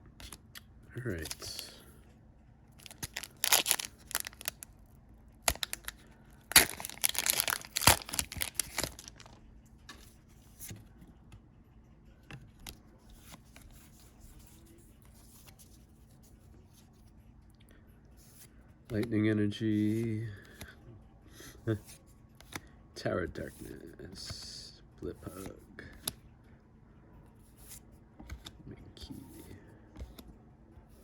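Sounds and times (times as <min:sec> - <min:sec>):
cards rustling and tapping: 0:00.2 - 0:01.7, 0:02.8 - 0:04.7, 0:05.5 - 0:10.9, 0:25.2 - 0:26.2, 0:27.6 - 0:28.6, 0:29.4 - 0:30.3
foil wrapper tearing: 0:02.8 - 0:04.6, 0:05.5 - 0:09.3.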